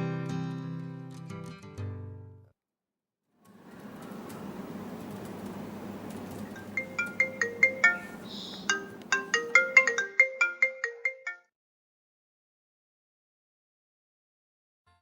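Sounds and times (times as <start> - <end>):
bright ringtone-like jingle: 6.6 - 11.5.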